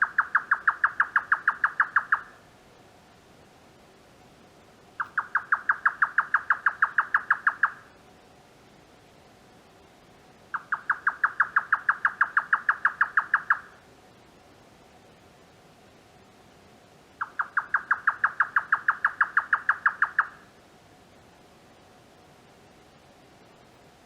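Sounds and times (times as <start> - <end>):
nightjar call: 0.0 - 2.5, 5.0 - 8.0, 10.5 - 13.9, 17.2 - 20.5.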